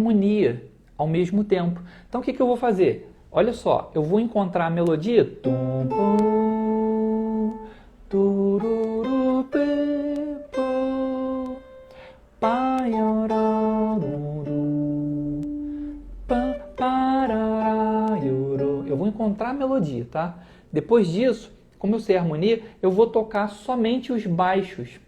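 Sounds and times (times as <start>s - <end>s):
guitar melody single notes: 4.8s - 20.0s.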